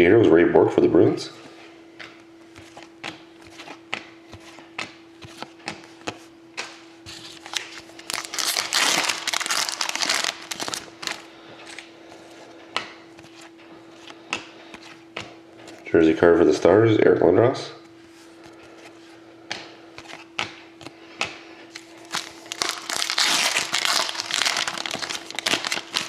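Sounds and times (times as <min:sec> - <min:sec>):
foil wrapper tearing and crinkling: 0:07.2 - 0:11.8, 0:21.8 - 0:26.0.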